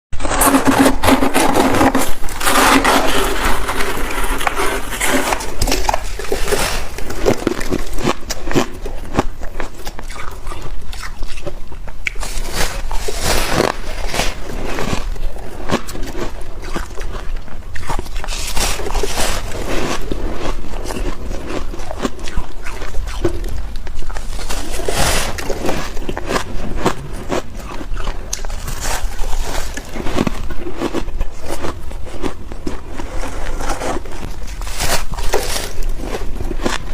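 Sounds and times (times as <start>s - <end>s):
frost scraping: 0.2s - 10.4s, 12.2s - 17.2s, 17.8s - 36.9s
frost crunching: 0.2s - 36.9s.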